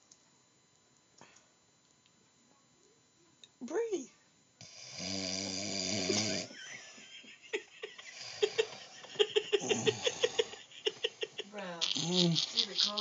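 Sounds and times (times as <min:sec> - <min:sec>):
man snoring: 0:04.6 - 0:06.6, 0:08.0 - 0:08.8, 0:09.5 - 0:10.7, 0:11.8 - 0:12.7.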